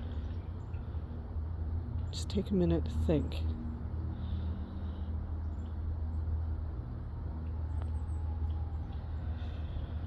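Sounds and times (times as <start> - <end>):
small birds chirping: 0.0 - 1.2, 1.9 - 6.6
steady low rumble: 0.0 - 10.0.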